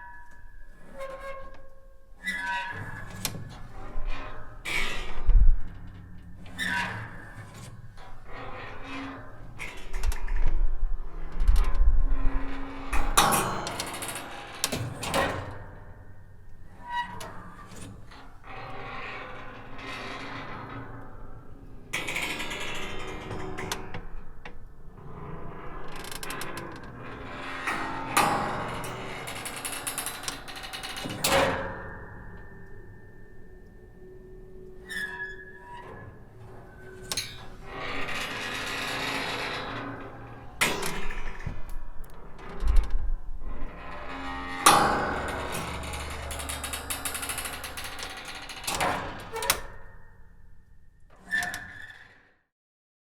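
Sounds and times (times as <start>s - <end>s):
wooden door creaking: 35.7s - 49.8s.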